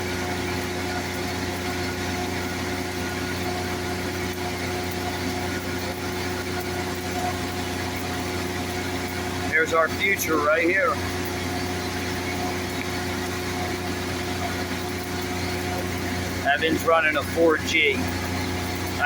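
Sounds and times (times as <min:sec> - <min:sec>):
welding machine engine humming: 0:00.0 - 0:19.0.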